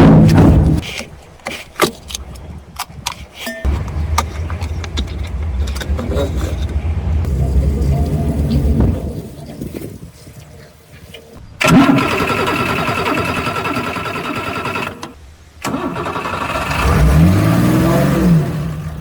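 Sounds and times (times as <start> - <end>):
diesel engine running: 3.7 - 9.4.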